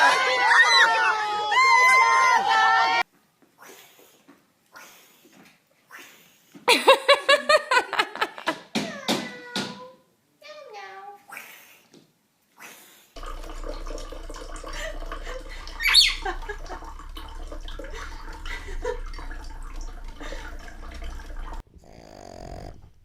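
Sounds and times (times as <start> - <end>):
water running and splashing: 13.2 - 21.6
low hum: 13.2 - 23.0.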